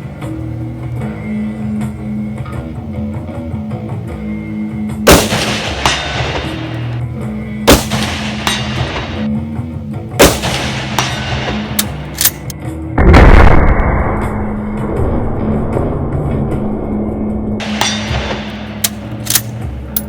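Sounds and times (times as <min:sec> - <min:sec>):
rifle shots ringing out: 0:05.1 - 0:06.9, 0:07.7 - 0:09.3, 0:10.2 - 0:12.5, 0:17.6 - 0:19.6.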